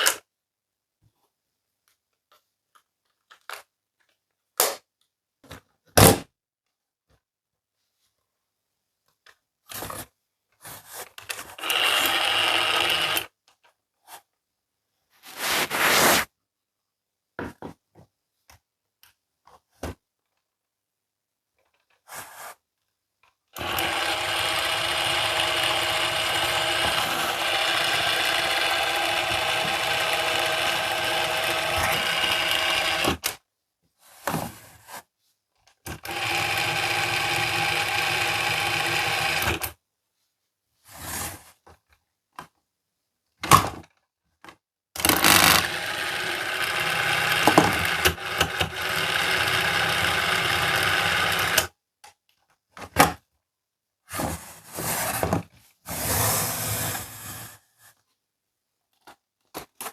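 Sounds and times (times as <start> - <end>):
small toy motor running: 11.6 - 13.3, 23.6 - 33.3, 36.0 - 39.7, 45.0 - 51.6.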